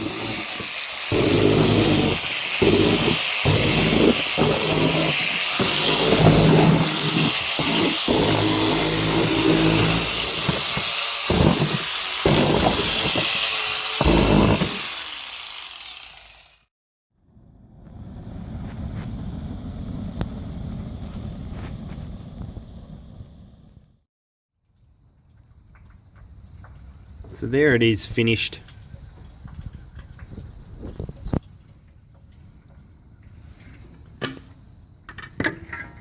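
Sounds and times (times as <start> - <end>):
heavy grinding: 0.0 - 16.5
power tool motor whine: 0.0 - 16.6.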